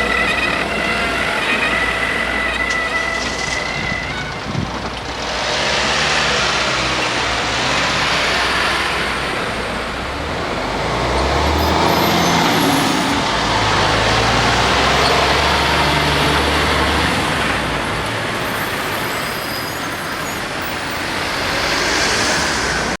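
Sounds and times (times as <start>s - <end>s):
cars and trucks passing: 0.0s - 23.0s
heavy engine running low: 0.0s - 23.0s.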